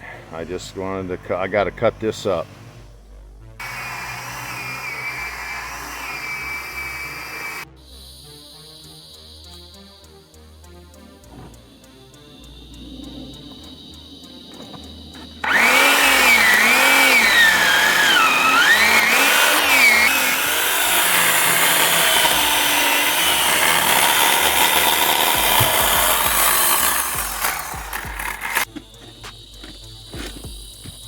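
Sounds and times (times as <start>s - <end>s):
chainsaw cutting wood: 3.6s - 7.6s, 14.6s - 31.0s.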